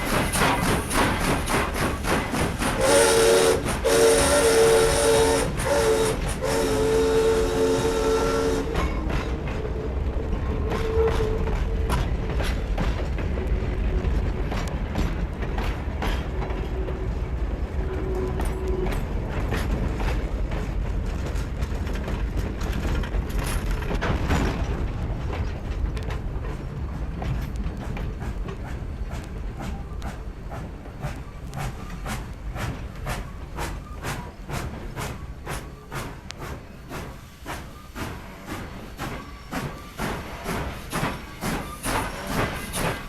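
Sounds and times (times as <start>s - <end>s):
clanks and clicks from train wheels: 0.0s - 43.0s
train rumbling: 0.0s - 43.0s
train chime whistle: 2.8s - 9.1s.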